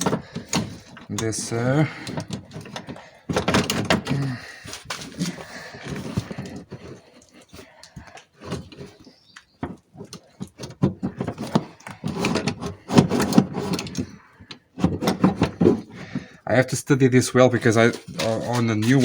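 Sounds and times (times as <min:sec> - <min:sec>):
metal window regulator clanking and scraping: 0:00.0 - 0:07.0, 0:09.8 - 0:16.1.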